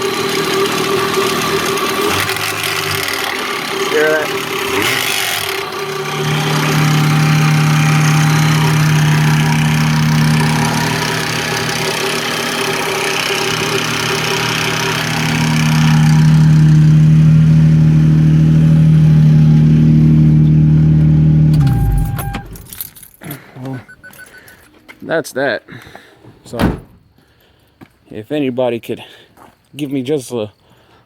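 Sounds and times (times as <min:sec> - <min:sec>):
car engine running: 0:00.0 - 0:22.8.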